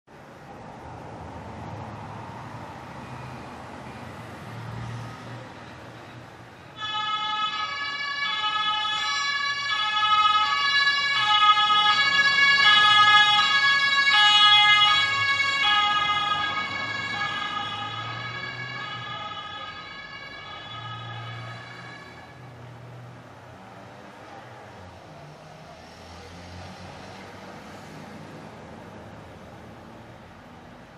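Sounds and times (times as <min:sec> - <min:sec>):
road traffic rumble: 0:00.1 - 0:30.9
two-tone ambulance siren: 0:06.7 - 0:23.0.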